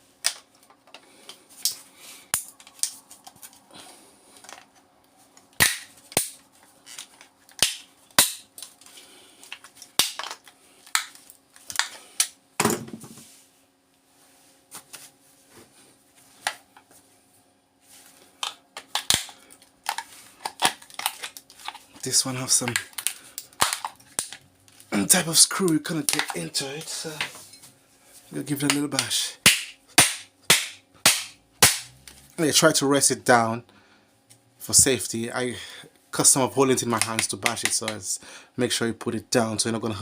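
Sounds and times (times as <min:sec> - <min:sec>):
plastic casing cracking: 0:18.4 - 0:21.8, 0:22.6 - 0:24.8.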